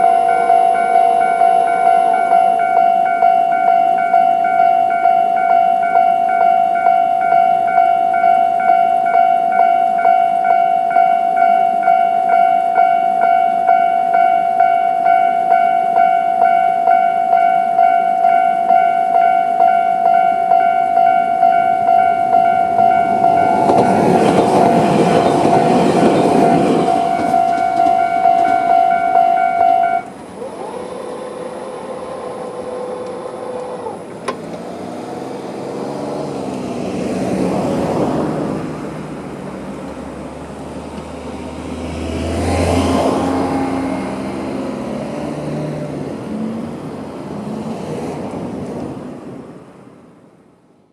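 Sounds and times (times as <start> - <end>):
barrier arm motor whine: 0.0 - 3.4, 22.3 - 35.7
level crossing electronic alarm bell: 0.0 - 34.1
road vehicles driving over crossing: 0.0 - 50.6
train passing: 0.0 - 50.7.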